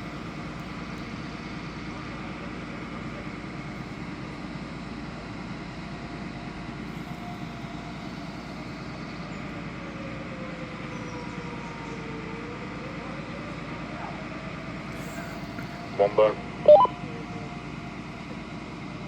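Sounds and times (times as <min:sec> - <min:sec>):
faint warning siren wailing: 0:07.2 - 0:18.7.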